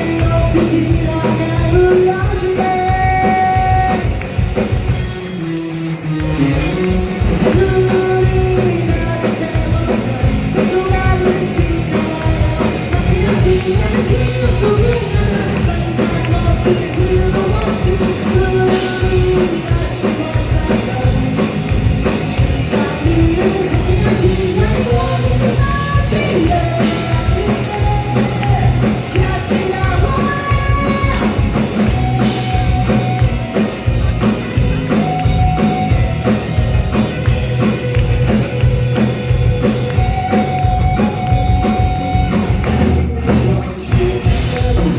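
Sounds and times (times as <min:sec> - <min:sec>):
person singing: 0:00.0 - 0:04.7, 0:06.5 - 0:34.0, 0:43.8 - 0:44.9
drum kit: 0:00.0 - 0:44.9
live rock band playing: 0:00.0 - 0:44.9.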